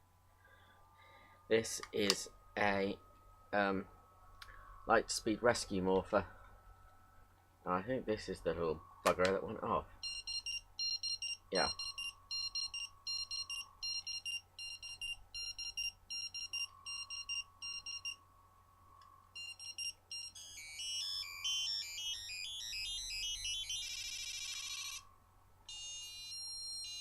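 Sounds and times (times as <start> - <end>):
electronic tune: 10.0 - 18.2, 19.4 - 25.1
toy electronic beeps: 10.0 - 18.2, 19.4 - 25.0, 25.7 - 27.0
fast warbling electronic tone: 20.4 - 25.0.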